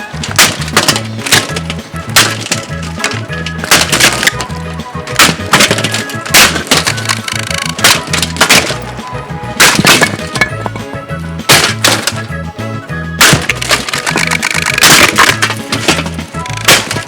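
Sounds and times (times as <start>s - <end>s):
background music with bass line: 0.0s - 17.0s
plastic fan being smashed: 0.0s - 17.0s.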